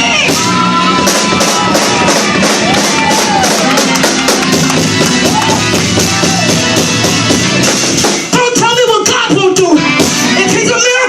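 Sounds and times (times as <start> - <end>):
church band music: 0.0 - 11.0
drum kit: 0.0 - 11.0
guitar: 0.0 - 11.0.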